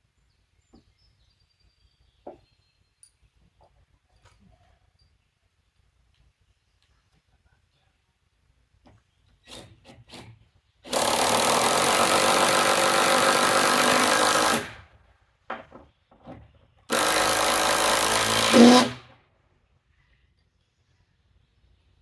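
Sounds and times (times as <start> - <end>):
impact driver hammering: 10.9 - 14.8, 16.9 - 19.0.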